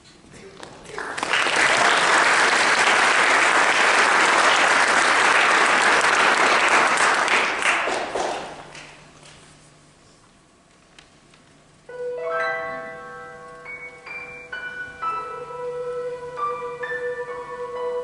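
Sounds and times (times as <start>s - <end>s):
audience applause: 0.8s - 9.0s.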